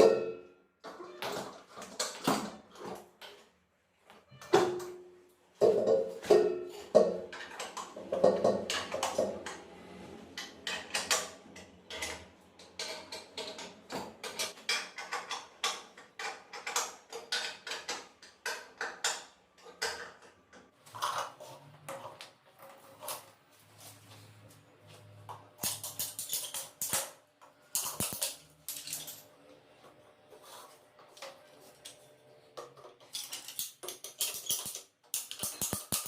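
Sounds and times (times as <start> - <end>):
metallic clicks and clanks: 25.6 - 29.3, 32.7 - 36.0.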